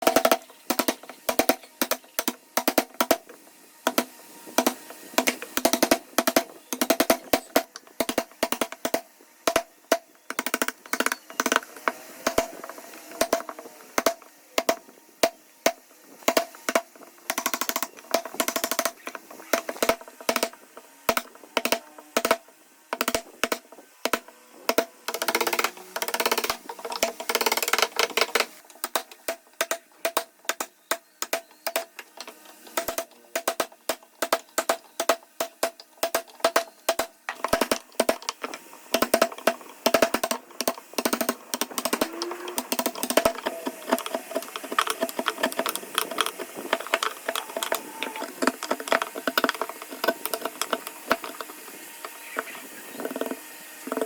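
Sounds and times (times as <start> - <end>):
continuous rasping: 0.0 - 54.0.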